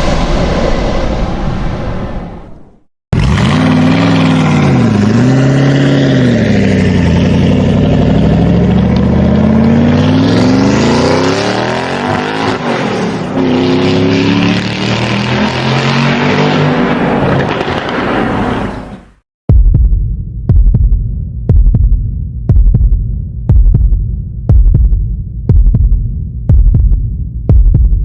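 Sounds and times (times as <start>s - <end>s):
car engine revving: 3.2s - 18.4s.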